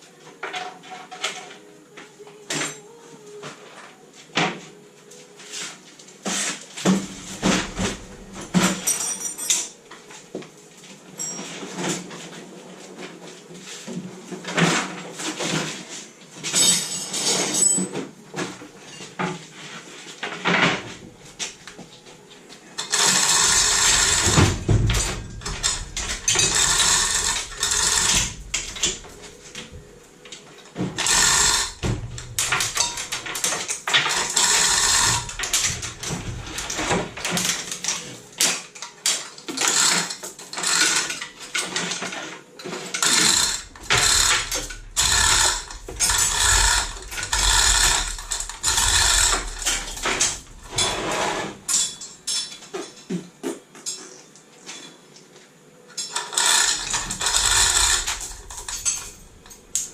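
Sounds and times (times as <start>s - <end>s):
steady mechanical noise: 0.0s - 53.0s, 55.8s - 59.9s
metal tools clanking: 6.3s - 9.9s, 11.2s - 12.1s, 16.4s - 19.3s, 22.8s - 53.1s, 55.9s - 59.9s.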